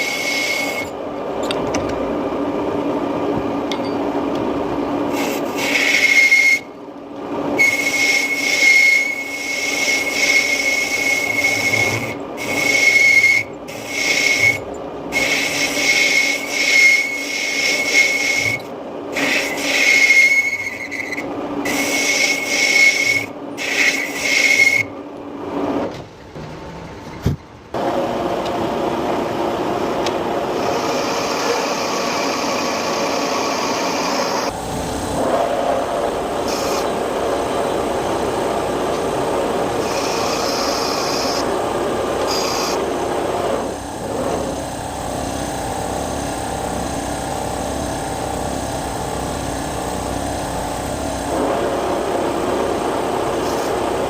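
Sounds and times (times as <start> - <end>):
steady machine noise: 0.0 - 54.0
lathe tool scraping metal: 7.6 - 24.8.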